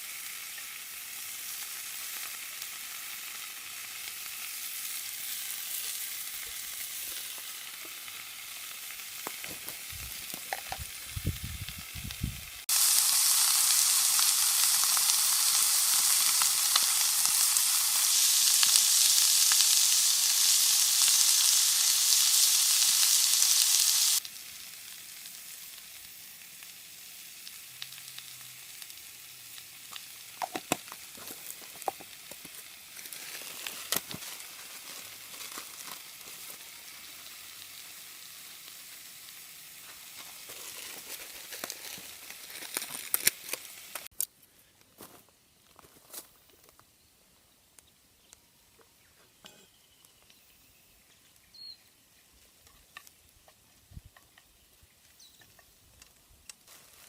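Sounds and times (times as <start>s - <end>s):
loud harsh sizzle: 0.0s - 44.1s
noodles sizzling in a skillet: 0.0s - 44.2s, 49.8s - 57.0s.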